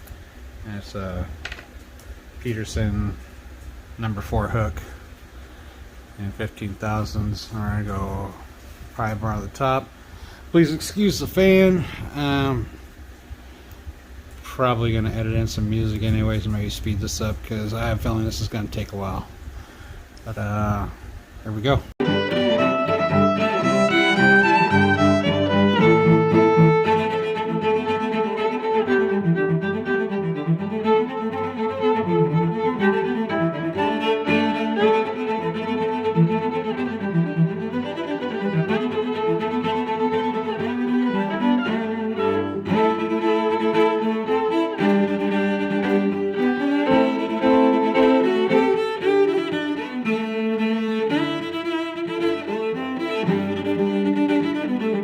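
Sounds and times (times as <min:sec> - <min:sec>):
bowed strings music: 0:22.0 - 0:55.0.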